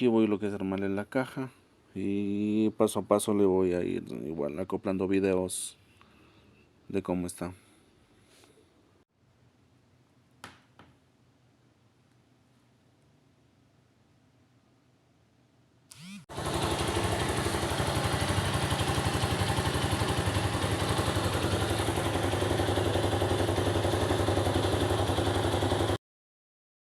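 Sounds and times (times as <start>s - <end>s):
motorcycle engine starting and idling: 15.9s - 26.0s.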